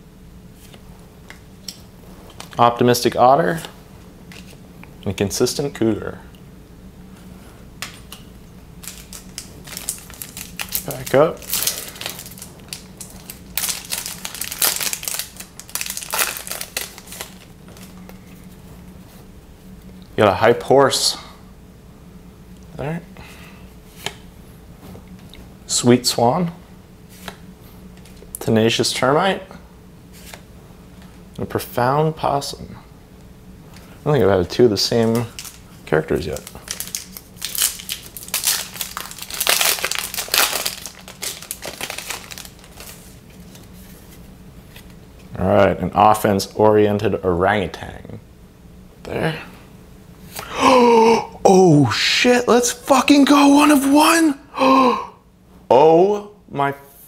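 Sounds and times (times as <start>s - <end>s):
foil wrapper crinkling and tearing: 8.8s - 18.0s, 34.9s - 43.7s.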